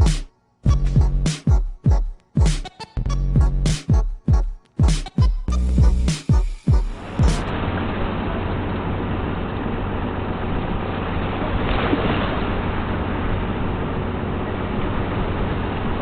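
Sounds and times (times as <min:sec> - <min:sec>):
boat engine humming: 0:06.9 - 0:16.0
water rushing: 0:06.9 - 0:16.0.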